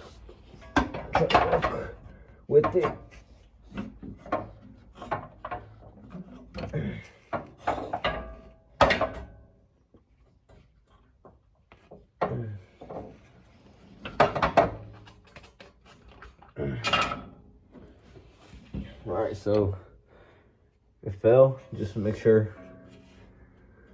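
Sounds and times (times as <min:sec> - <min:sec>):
metal knocks and clunks: 0:00.5 - 0:09.4, 0:14.0 - 0:15.1.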